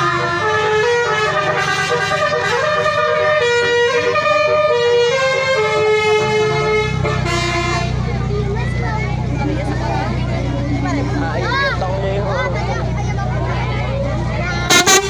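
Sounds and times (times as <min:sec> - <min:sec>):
multi-tone bus horn tune: 0:00.0 - 0:08.4, 0:14.6 - 0:15.0.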